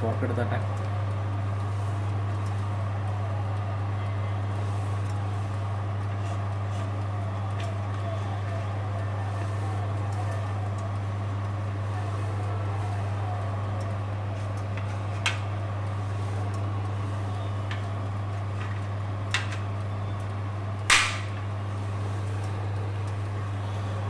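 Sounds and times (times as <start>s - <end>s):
electric oven humming: 0.0s - 24.0s.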